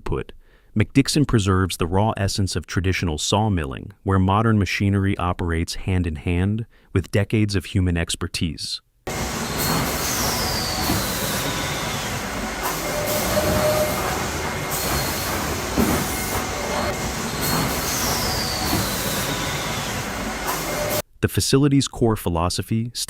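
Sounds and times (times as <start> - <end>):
sawmill machinery clatter: 9.1 - 21.0.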